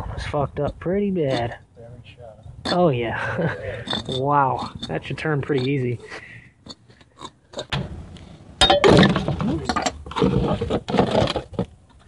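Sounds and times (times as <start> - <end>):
metal parts clinking and rattling: 3.8 - 5.8.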